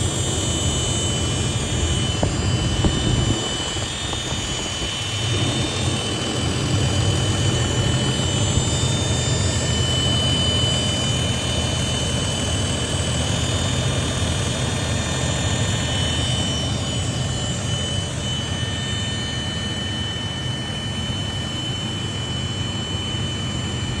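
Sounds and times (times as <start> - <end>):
high-pitched engine whine: 0.0 - 24.0
low engine rumble: 0.1 - 10.2.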